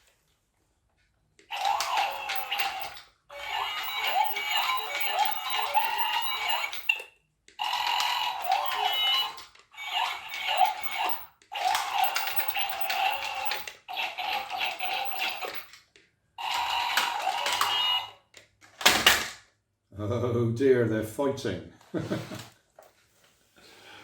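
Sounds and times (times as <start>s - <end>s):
toy robot electronic beeps: 1.5s - 15.6s, 16.4s - 18.2s.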